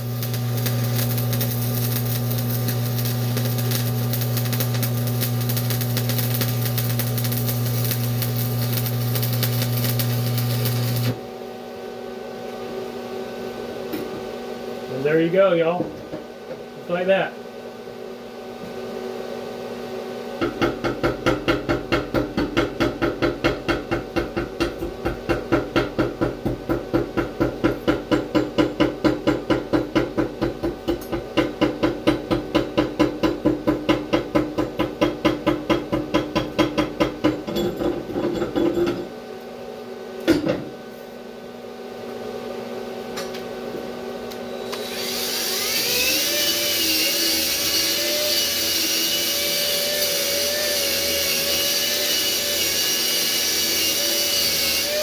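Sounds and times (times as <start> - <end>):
welding arc hissing: 0.0 - 11.2, 44.7 - 55.0.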